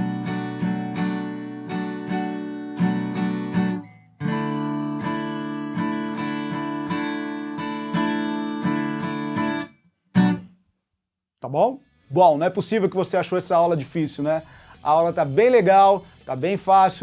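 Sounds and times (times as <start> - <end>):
acoustic guitar strumming: 0.0 - 10.6.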